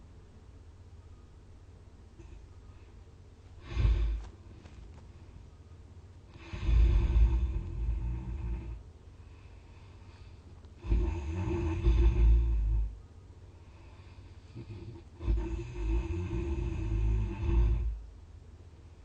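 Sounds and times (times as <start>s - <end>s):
person snoring loudly: 3.6s - 4.2s, 6.4s - 8.8s, 10.8s - 12.9s, 14.6s - 18.0s.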